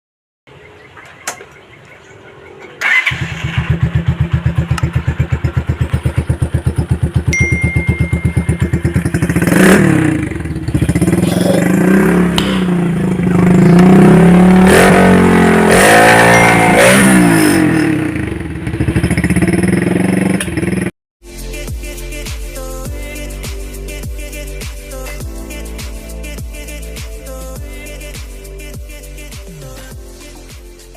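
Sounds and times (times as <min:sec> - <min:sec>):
motorcycle engine idling: 0:02.8 - 0:14.5, 0:16.9 - 0:20.9
motorcycle engine revving: 0:02.8 - 0:20.9.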